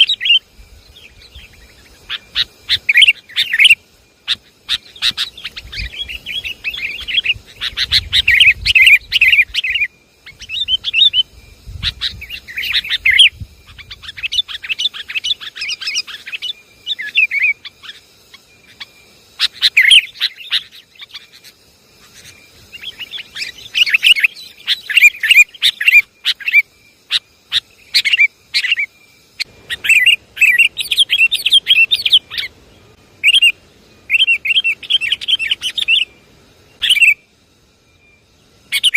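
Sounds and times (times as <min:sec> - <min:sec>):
bulbuls chattering calls: 0:18.7 - 0:36.1.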